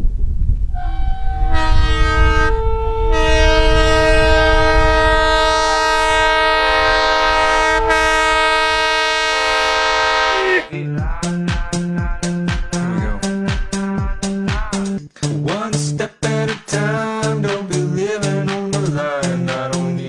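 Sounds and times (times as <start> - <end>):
passing train rumble: 0.0 - 10.7
locomotive air horn chord: 0.7 - 10.7.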